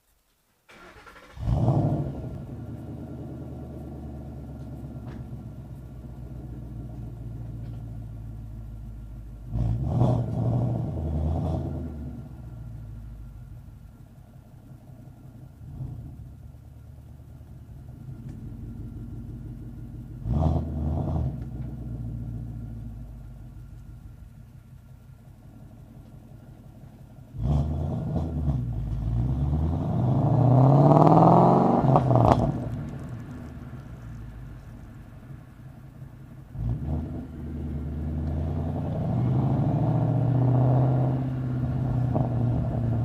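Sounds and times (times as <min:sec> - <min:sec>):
car engine idling: 0:00.0 - 0:43.0
car engine starting: 0:00.1 - 0:43.0
engine revving: 0:00.7 - 0:08.7, 0:09.4 - 0:12.8, 0:17.8 - 0:23.4, 0:25.3 - 0:34.9, 0:36.4 - 0:43.0.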